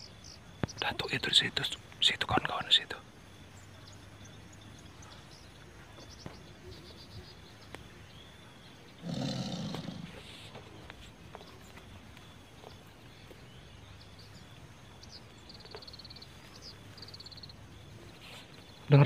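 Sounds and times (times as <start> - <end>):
forest ambience: 0.0 - 19.0
small bird chirps: 0.0 - 19.0
tiger roar: 9.0 - 10.3.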